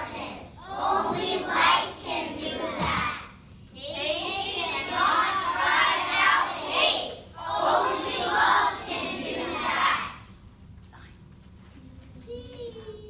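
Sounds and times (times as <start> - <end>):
children speaking in unison: 0.0 - 10.4.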